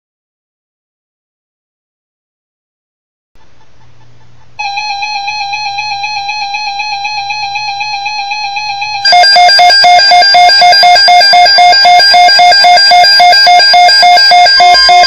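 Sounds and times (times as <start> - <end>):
faint low hum: 3.4 - 9.2
buzzy electronic alert tone: 4.6 - 15.0.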